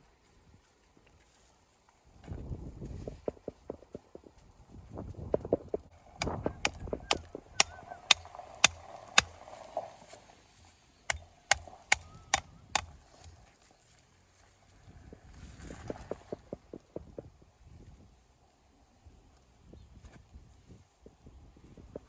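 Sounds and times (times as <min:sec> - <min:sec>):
hammer striking stone: 0:06.2 - 0:09.4, 0:11.1 - 0:12.9.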